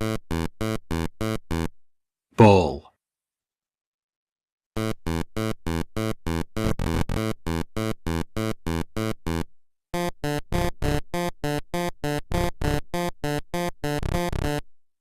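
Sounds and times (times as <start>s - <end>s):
staccato synthesizer notes: 6.6s - 7.3s.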